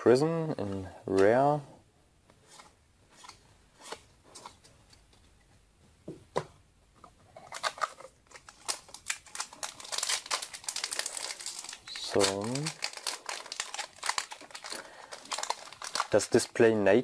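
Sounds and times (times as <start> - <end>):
foil wrapper crinkling: 7.5 - 16.6.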